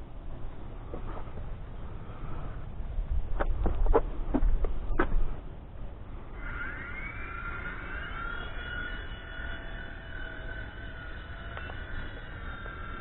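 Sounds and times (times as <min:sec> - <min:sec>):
toy helicopter motor whining: 0:06.3 - 0:13.0.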